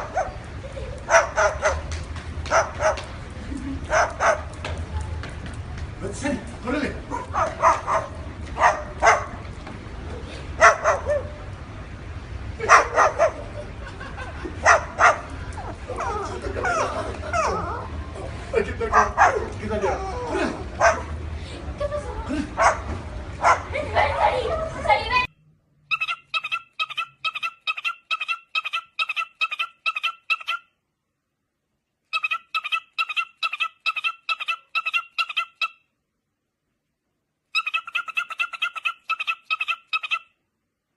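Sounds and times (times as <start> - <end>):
dog barking: 1.1 - 1.9, 2.5 - 3.0, 3.9 - 4.5, 7.1 - 9.4, 10.6 - 11.3, 12.7 - 13.4, 14.6 - 15.3, 18.9 - 19.5, 20.8 - 21.1, 23.4 - 23.7
bird calling rapidly: 25.9 - 30.8, 32.1 - 35.9, 37.5 - 40.4.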